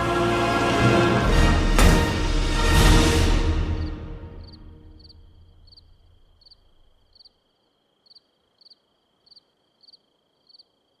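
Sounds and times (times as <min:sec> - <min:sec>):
cricket chirping: 0:03.6 - 0:11.0.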